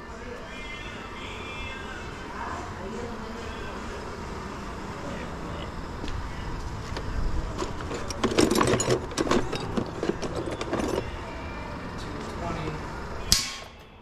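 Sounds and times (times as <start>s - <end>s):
scrap metal clattering and clinking: 7.5s - 11.1s.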